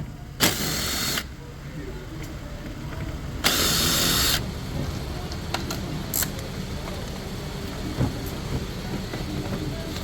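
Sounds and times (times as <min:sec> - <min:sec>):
power tool burst: 0:00.4 - 0:01.3.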